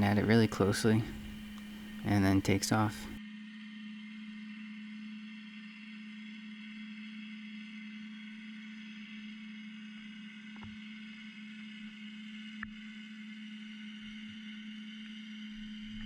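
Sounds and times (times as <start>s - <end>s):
underwater low hum: 0.0s - 3.2s, 15.3s - 16.0s.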